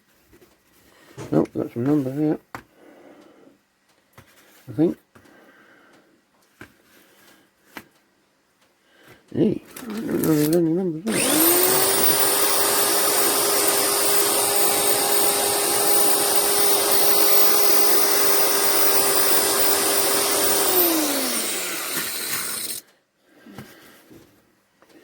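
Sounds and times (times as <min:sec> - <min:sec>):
power tool motor whining: 0:11.1 - 0:22.8.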